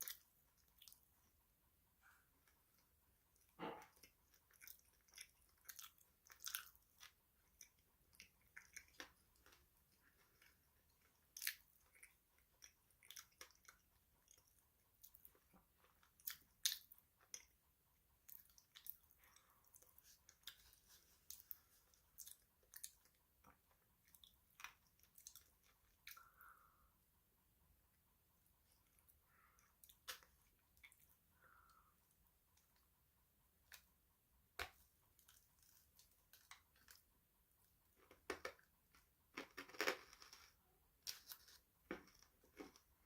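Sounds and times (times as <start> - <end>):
person chewing crisp food: 0.0 - 1.1, 3.4 - 17.6, 18.2 - 26.8, 28.8 - 31.9, 34.6 - 37.0, 39.3 - 43.0.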